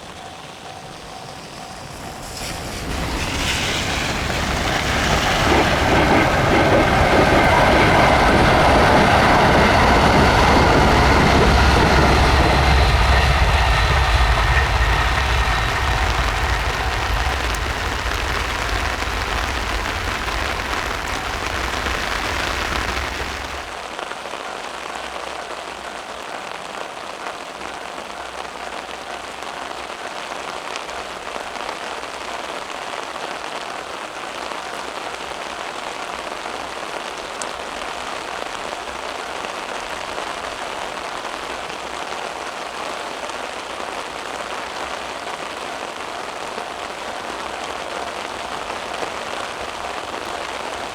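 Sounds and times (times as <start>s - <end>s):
steady rain falling: 0.0s - 50.9s
passing vehicle rumble: 1.4s - 23.8s.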